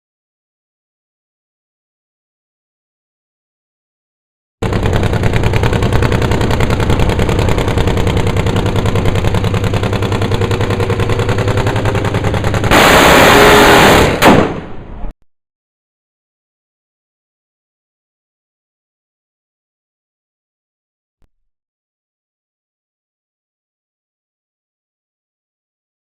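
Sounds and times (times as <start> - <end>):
engine bang: 4.6 - 15.1
engine roaring: 4.6 - 15.1.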